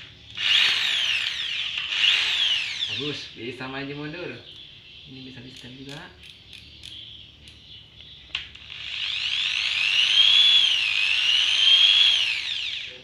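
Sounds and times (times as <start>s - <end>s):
electric drill motor whine: 0.0s - 3.3s, 8.4s - 13.0s.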